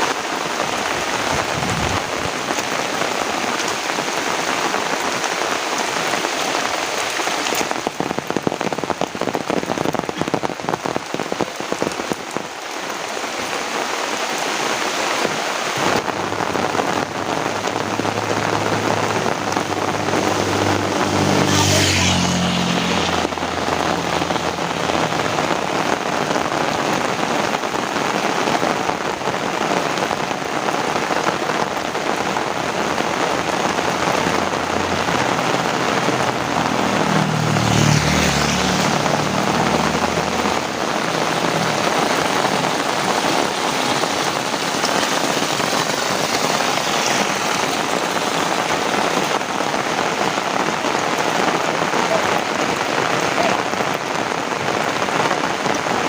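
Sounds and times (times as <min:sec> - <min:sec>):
heavy rain: 0:00.0 - 0:56.0
passing motor vehicle hum: 0:16.0 - 0:26.7, 0:32.1 - 0:56.0.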